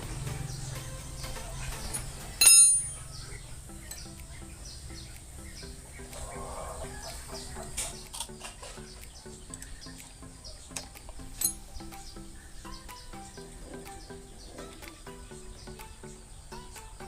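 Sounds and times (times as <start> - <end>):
background music with beat: 0.0 - 17.0
sharp ringing clang: 2.4 - 3.1, 11.4 - 11.6.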